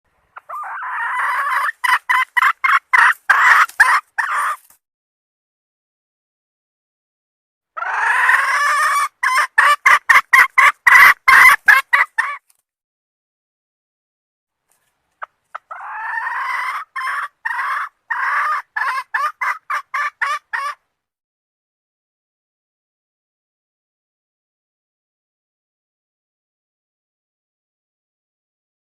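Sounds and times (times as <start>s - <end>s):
hen calling: 0.4s - 4.7s.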